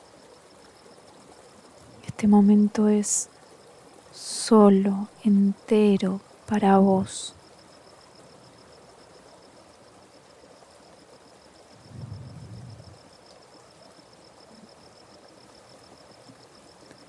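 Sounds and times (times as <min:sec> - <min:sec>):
faint stream flowing: 0:00.0 - 0:17.0
insect trilling: 0:11.7 - 0:13.1
brief low rumble: 0:11.8 - 0:13.0.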